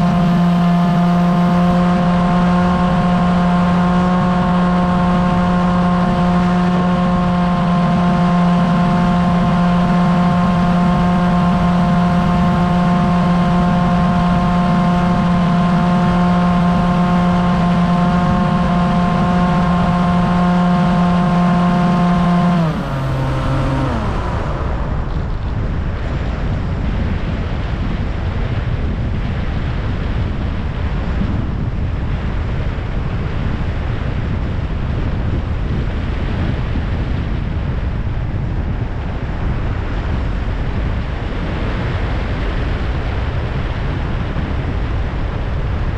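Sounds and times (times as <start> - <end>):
electric motor and propeller whine: 0.0 - 26.6
wind rushing over microphone: 0.0 - 45.9.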